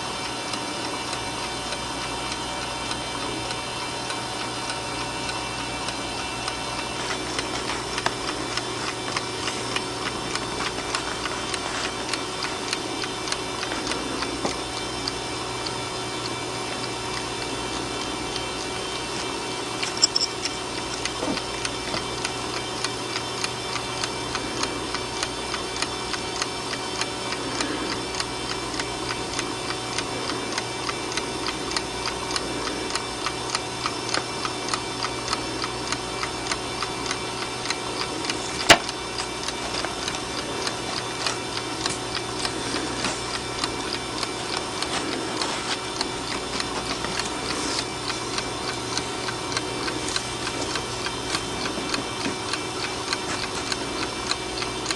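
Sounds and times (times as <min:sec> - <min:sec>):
alarm clock ticking: 0:00.5 - 0:54.9
sharp click: 0:19.8 - 0:20.6.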